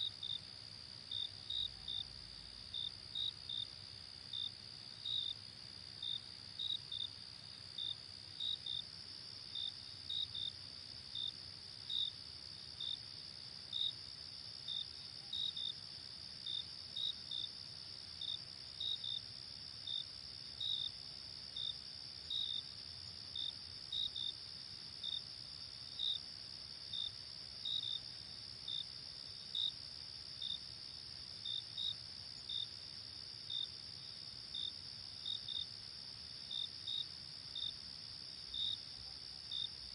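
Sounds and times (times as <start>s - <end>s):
loud insect chirp: 16.4s - 39.9s.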